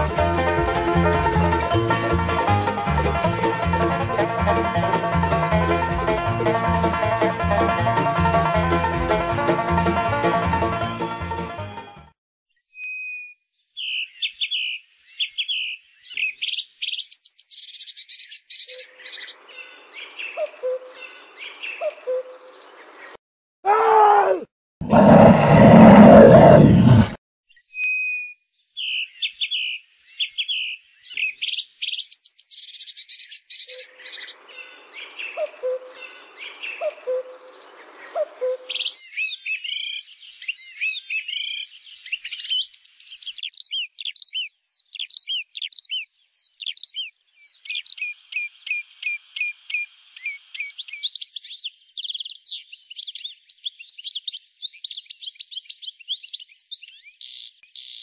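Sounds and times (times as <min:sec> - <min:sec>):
birds chirping and trilling: 0:12.7 - 0:23.2, 0:24.8 - 0:58.0
loud groaning voice: 0:23.7 - 0:27.2.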